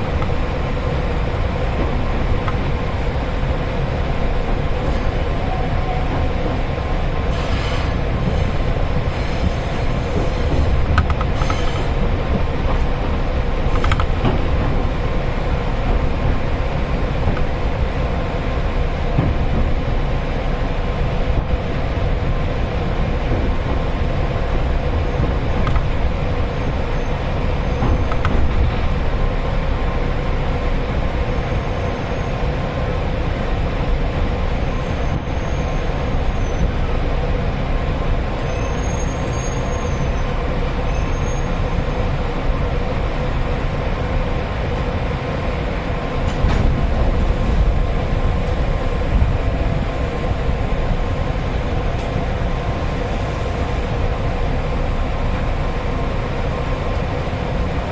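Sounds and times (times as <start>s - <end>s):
passenger train running: 0.0s - 57.9s.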